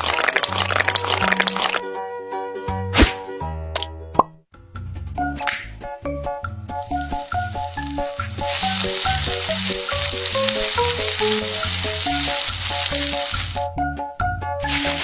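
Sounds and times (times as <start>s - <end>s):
bouncy background tune: 1.2s - 15.0s
sizzling hiss: 6.8s - 13.7s, 14.6s - 15.0s.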